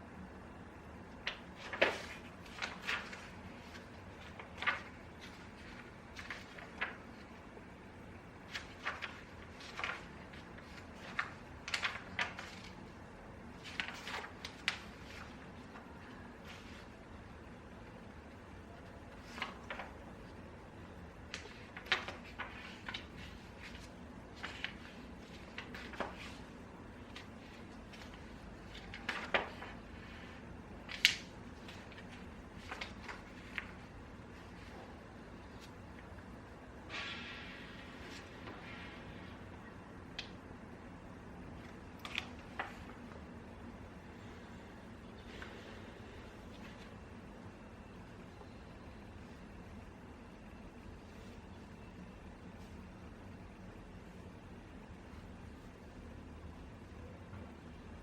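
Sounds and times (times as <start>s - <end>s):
low room hum: 0.0s - 58.0s.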